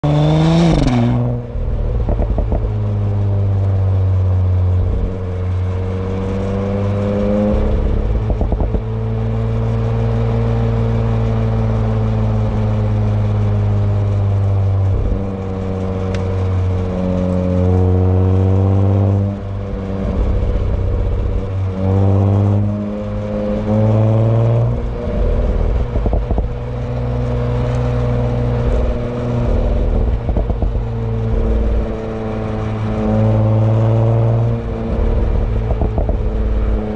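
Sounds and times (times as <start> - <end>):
car engine and exhaust: 0.0 - 36.9
exhaust pops and crackles: 0.7 - 3.8, 7.1 - 9.6, 14.6 - 21.8, 24.6 - 33.1, 34.8 - 36.9.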